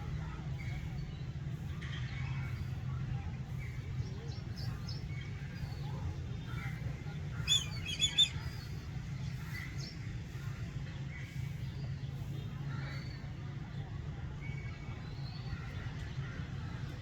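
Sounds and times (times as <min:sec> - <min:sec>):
bird of prey calling: 0:07.4 - 0:08.6.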